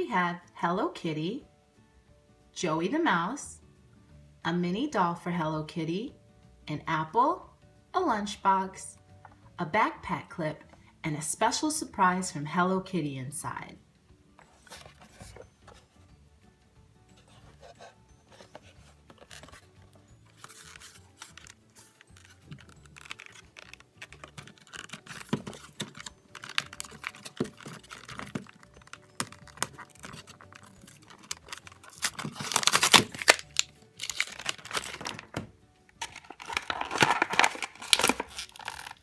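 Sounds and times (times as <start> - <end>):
packaging crinkling: 18.3 - 35.4, 36.0 - 39.0
packaging tearing: 19.1 - 19.7, 20.3 - 35.4, 36.0 - 39.0.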